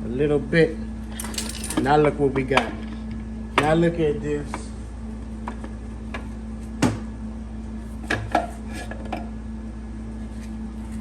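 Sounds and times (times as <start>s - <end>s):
steady background hum: 0.0s - 11.0s
metal parts clinking: 1.1s - 2.0s.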